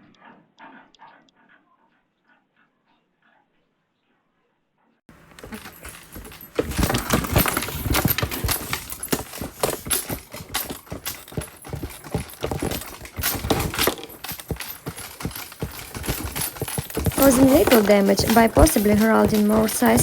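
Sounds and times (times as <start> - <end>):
hard objects clattering: 5.1 - 20.0.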